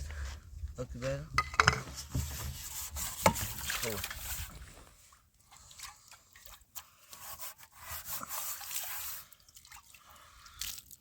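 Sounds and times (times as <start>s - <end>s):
faint scraping and rubbing: 0.8s - 5.0s, 6.8s - 9.4s.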